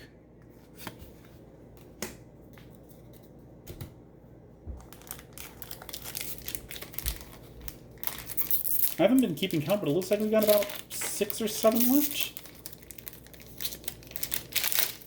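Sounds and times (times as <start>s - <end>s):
foil wrapper crinkling and tearing: 4.8s - 15.0s.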